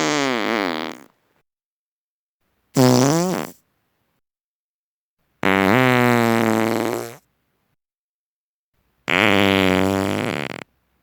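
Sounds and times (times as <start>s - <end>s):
human farts: 0.0s - 1.2s, 2.8s - 3.6s, 5.4s - 7.3s, 9.1s - 10.7s.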